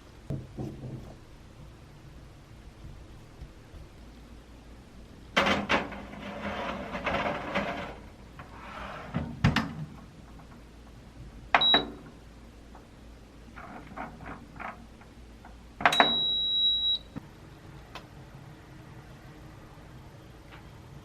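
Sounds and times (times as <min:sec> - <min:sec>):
knock: 0:00.3 - 0:01.2
rustling and clatter: 0:05.4 - 0:11.0.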